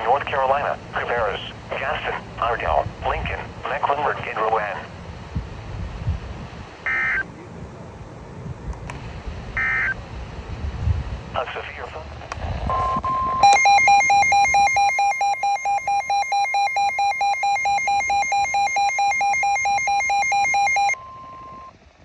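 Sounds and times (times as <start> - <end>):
steady warning alarm tone: 12.7 - 21.7
rapid electronic beeping: 12.8 - 21.0.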